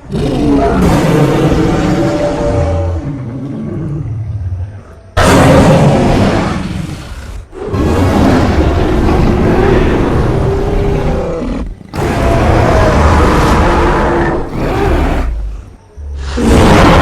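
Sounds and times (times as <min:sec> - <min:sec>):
creature roaring: 0:05.2 - 0:17.0.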